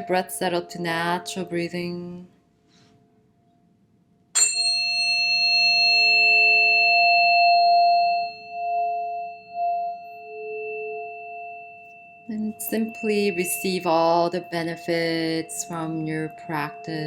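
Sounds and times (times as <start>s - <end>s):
tuning forks ringing: 4.4s - 17.0s.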